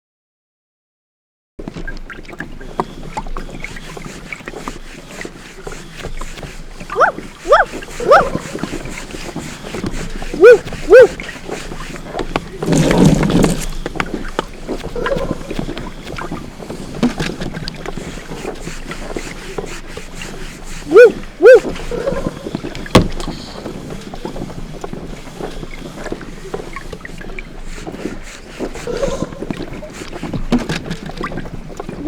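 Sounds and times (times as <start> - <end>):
water sloshing and splashing: 1.6 - 32.0
short high squeaks: 6.9 - 8.6, 10.3 - 11.2, 20.9 - 22.3.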